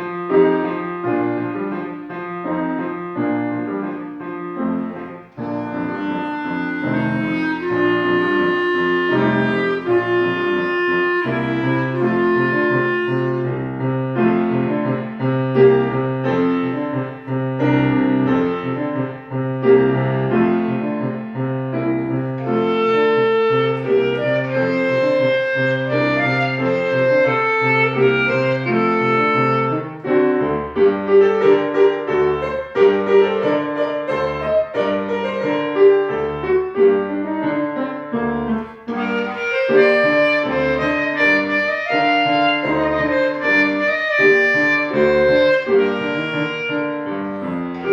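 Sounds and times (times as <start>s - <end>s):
piano playing: 0.0s - 47.9s
solo melody instrument: 0.0s - 47.9s.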